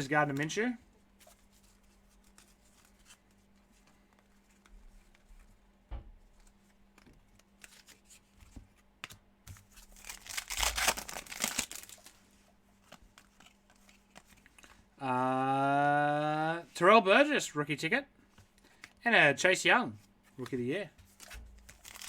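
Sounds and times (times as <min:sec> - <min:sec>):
foil wrapper tearing and crinkling: 0:09.8 - 0:12.2, 0:21.6 - 0:22.0.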